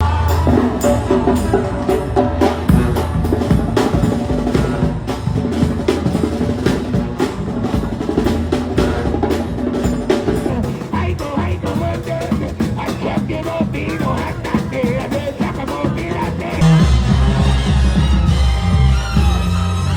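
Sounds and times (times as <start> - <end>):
sustained pitched instruments: 0.0 - 11.5, 16.6 - 19.9
drum kit beat: 0.0 - 19.6.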